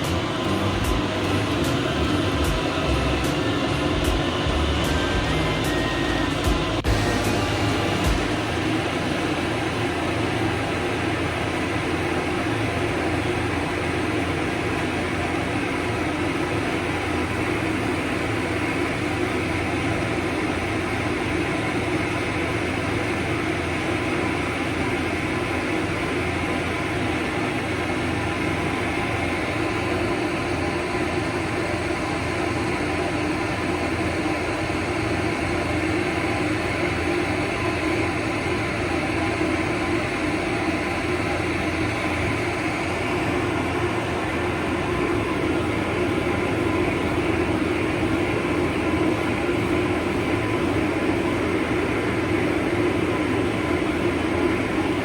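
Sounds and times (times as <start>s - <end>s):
hair dryer blowing: 0.0s - 11.7s.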